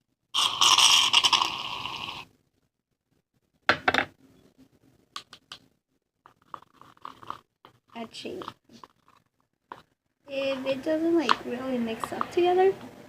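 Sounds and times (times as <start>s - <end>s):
knock: 3.7s - 4.1s.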